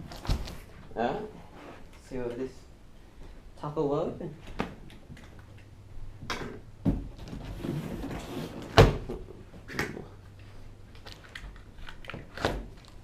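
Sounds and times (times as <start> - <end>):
cardboard rustling: 0.0 - 2.2.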